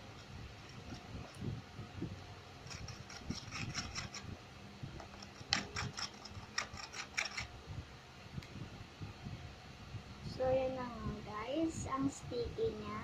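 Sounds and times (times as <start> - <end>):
slime being stirred: 2.6 - 4.2, 5.0 - 7.5
sticky scraping and clicking: 2.6 - 4.3, 5.0 - 7.5.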